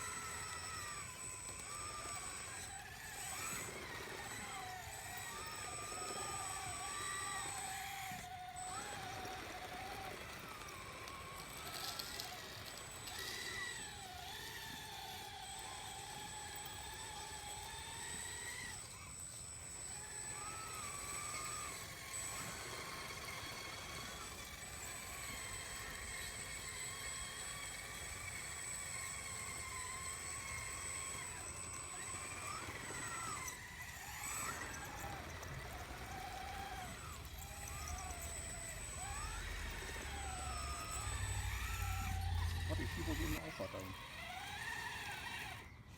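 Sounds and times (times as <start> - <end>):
small electric motors whining: 0.0 - 45.9
steady thin high whine: 29.2 - 44.0.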